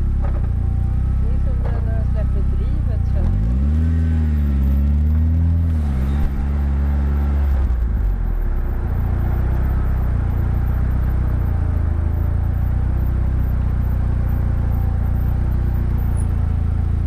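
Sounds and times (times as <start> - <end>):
car engine rumbling: 0.0 - 17.0.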